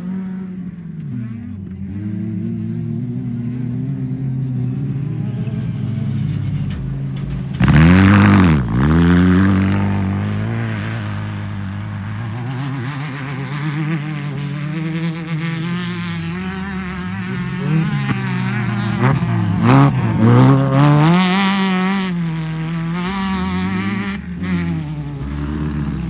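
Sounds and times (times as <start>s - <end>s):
race car engines running: 0.0s - 26.0s
loud car passing by: 5.4s - 26.0s.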